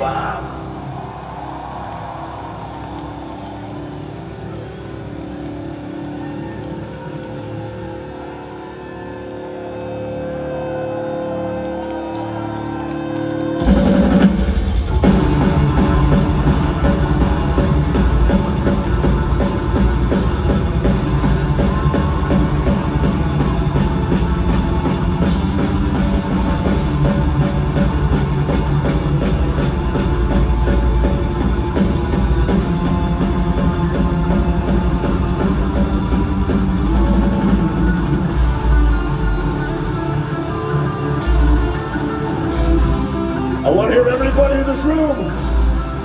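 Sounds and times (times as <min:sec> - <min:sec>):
distorted guitars: 0:00.0 - 0:46.0
bass guitar: 0:08.3 - 0:46.0
pounding drum kit: 0:13.6 - 0:40.1.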